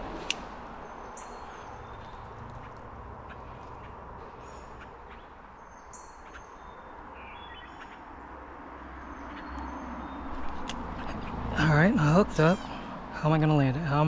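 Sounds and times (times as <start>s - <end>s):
high bird chirps: 3.3s - 8.1s.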